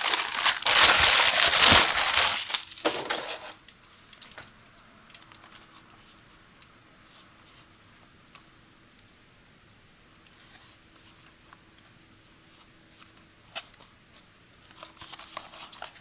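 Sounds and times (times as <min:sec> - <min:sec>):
packaging crinkling and rustling: 0:00.0 - 0:05.7.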